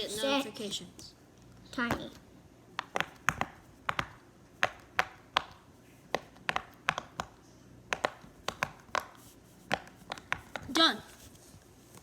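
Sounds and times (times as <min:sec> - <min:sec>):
pop-it toy bubbles popping: 0:02.8 - 0:05.6, 0:06.2 - 0:07.3, 0:07.9 - 0:09.1.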